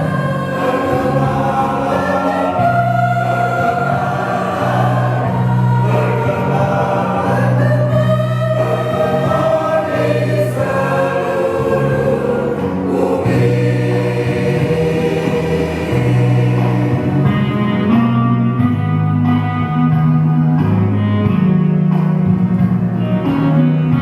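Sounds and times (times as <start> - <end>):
church choir singing a hymn: 0.0 - 18.6.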